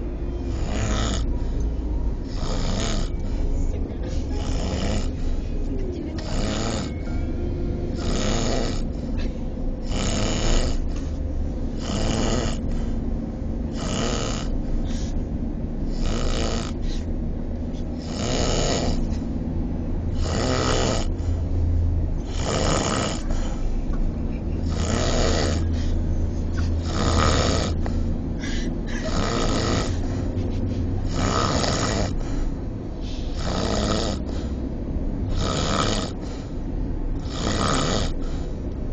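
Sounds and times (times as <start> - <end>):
person snoring loudly: 0.5 - 1.3, 2.2 - 3.2, 4.4 - 5.2, 6.2 - 7.1, 7.9 - 8.9, 9.8 - 10.8, 11.8 - 12.8, 13.7 - 14.5, 15.9 - 16.8, 18.0 - 19.1, 20.1 - 21.2, 22.2 - 23.4, 24.6 - 25.8, 26.8 - 27.9, 29.0 - 30.0, 31.1 - 32.2, 33.4 - 34.4, 35.3 - 36.3, 37.2 - 38.4.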